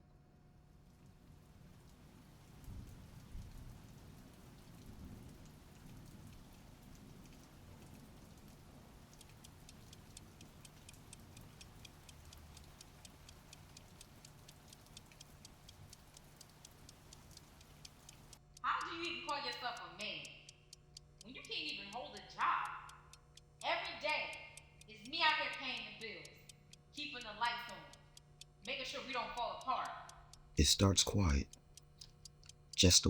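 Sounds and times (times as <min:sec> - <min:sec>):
fast faint ticking: 0:08.4 - 0:33.0.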